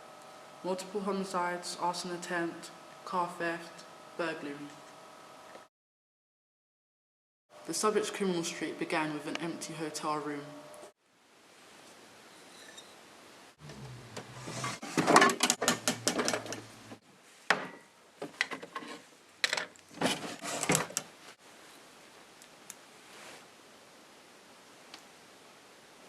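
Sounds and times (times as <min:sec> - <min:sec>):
objects clattering and clicking: 0:14.5 - 0:16.7.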